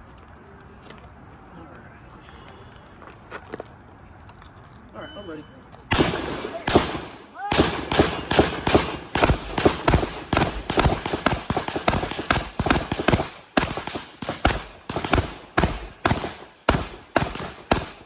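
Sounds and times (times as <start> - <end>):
rapid shotgun fire: 5.9 - 18.0.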